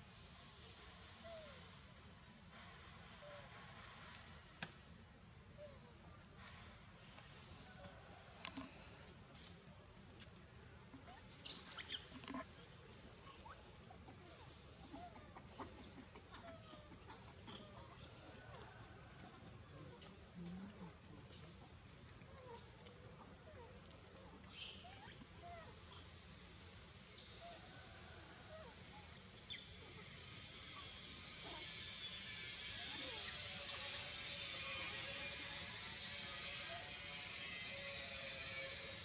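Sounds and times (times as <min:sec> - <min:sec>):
high-pitched insect drone: 0:10.2 - 0:39.0.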